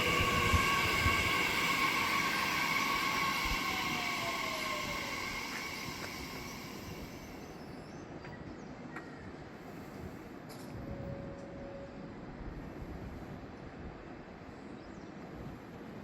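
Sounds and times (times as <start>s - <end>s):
electric train motor whine: 0.0s - 7.9s
rail noise: 0.0s - 16.0s.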